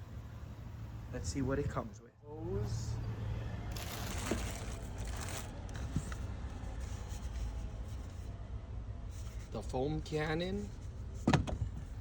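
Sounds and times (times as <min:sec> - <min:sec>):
packaging rustling and scraping: 0:03.7 - 0:08.2.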